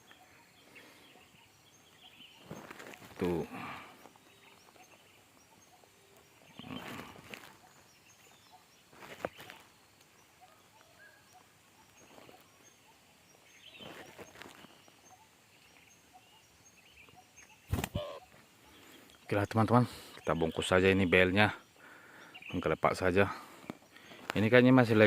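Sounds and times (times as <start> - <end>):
quiet rural background: 0.0 - 25.0
rustling and handling noises: 2.4 - 3.4, 8.8 - 9.8, 13.7 - 14.8.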